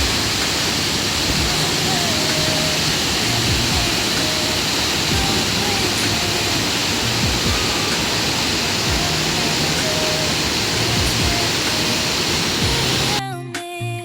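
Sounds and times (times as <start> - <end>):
mountain stream rushing: 0.0 - 13.2.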